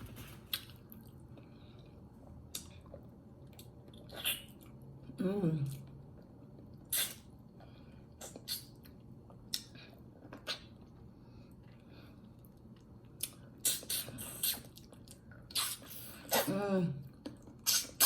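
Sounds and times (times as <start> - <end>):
wet mouth chewing smacks: 12.7 - 16.5.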